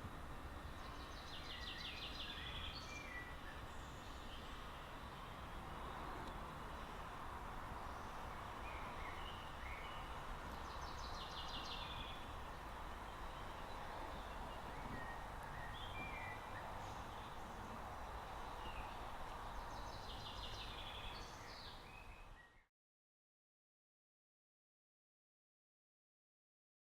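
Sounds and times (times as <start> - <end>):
steady background noise: 0.0 - 22.1
birds chirping: 7.8 - 22.6.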